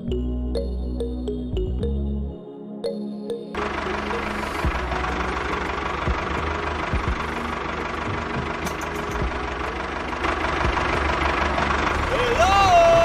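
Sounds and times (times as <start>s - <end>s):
small engine running: 3.6s - 13.0s.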